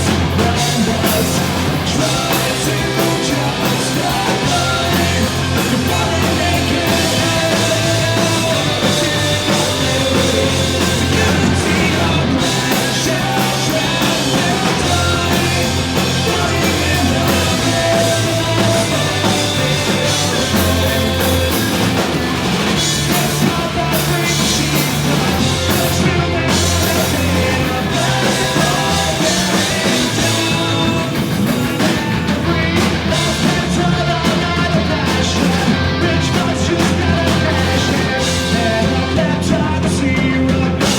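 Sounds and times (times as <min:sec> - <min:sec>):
punk rock band playing live: 0:00.0 - 0:40.9.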